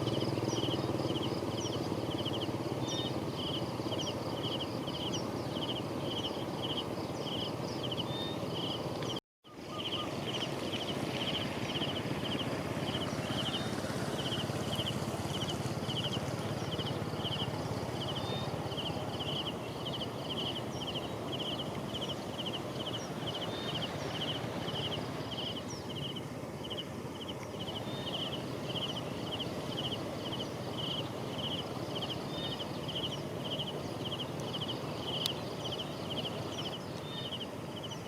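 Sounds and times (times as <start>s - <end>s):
constant rushing noise: 10.0s - 38.0s.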